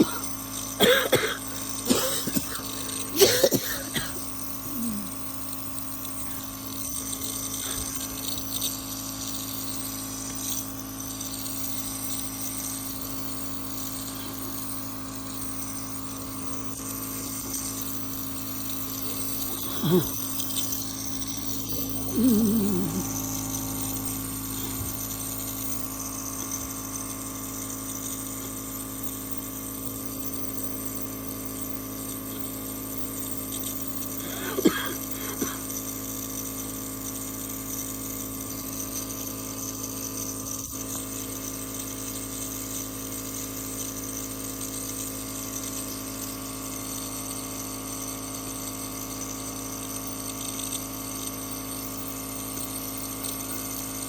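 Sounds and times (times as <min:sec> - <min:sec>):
person coughing: 0:00.0 - 0:05.2, 0:19.5 - 0:20.2, 0:21.7 - 0:23.4, 0:34.2 - 0:35.8
small motor humming: 0:00.0 - 0:54.0
person's short voice sound: 0:21.8 - 0:23.3.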